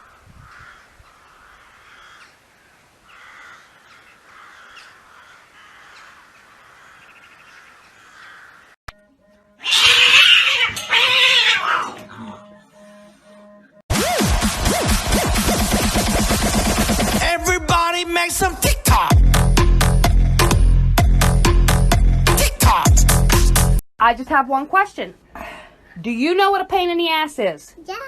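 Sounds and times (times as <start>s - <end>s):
cat yowling: 9.6s - 12.1s.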